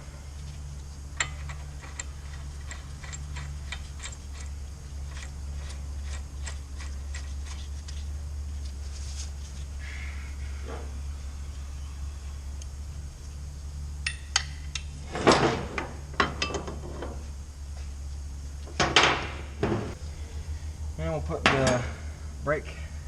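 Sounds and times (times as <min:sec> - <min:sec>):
steady low hum: 0:00.0 - 0:23.0
axle nut metallic clicks: 0:01.2 - 0:08.0.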